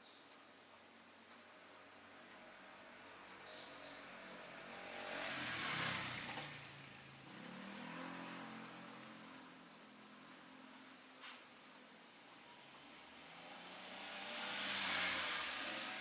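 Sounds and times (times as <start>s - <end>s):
faint engine passing: 2.2s - 11.0s, 12.6s - 16.0s
vehicle passing by: 2.8s - 10.6s, 12.7s - 16.0s.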